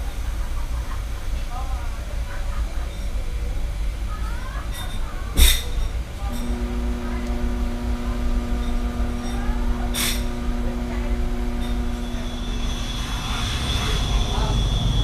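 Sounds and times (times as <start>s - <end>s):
pitched mechanical hum: 0.0s - 15.0s
low rumble: 5.3s - 15.0s.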